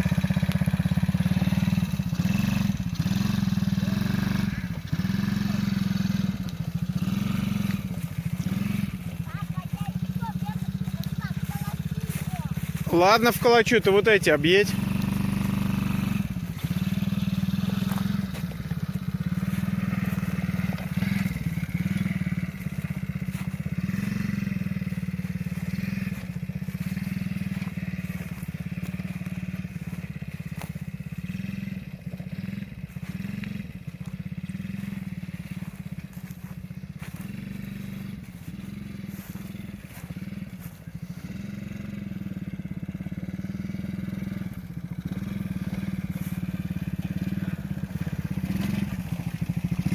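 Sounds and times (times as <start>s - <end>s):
small quad bike engine running: 0.0s - 49.9s.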